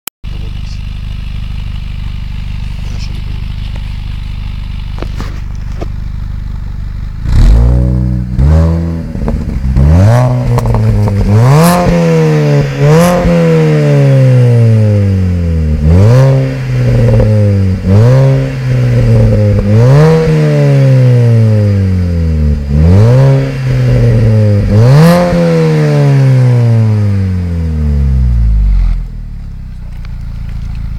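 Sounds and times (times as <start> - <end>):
car engine idling and revving: 0.2 - 30.9.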